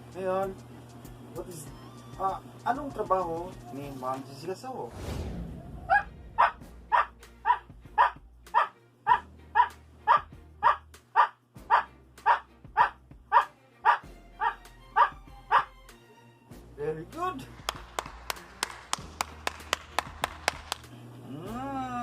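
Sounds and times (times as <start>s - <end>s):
dog barking: 5.9s - 15.7s.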